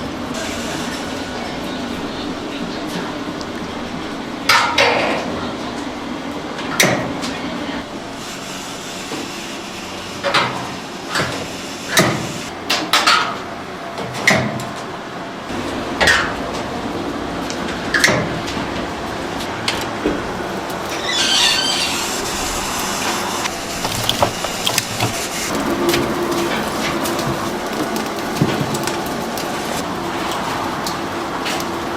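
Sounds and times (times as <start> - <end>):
steady background noise: 0.0 - 31.9
kitchen work knocks and clatter: 23.7 - 29.1.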